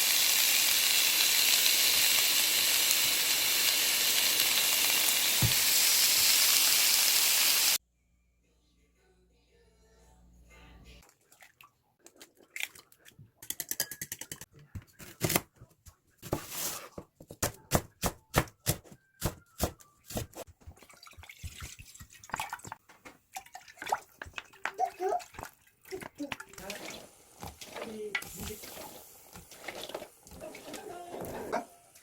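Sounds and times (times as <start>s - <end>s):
water dripping and running: 0.0s - 7.8s, 20.5s - 32.0s
dishes and utensils clinking: 13.4s - 14.9s.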